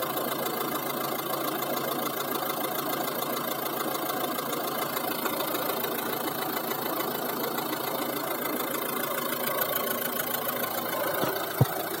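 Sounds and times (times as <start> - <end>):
diesel engine idling with knock: 0.0 - 12.0
loud thump: 11.2 - 11.8.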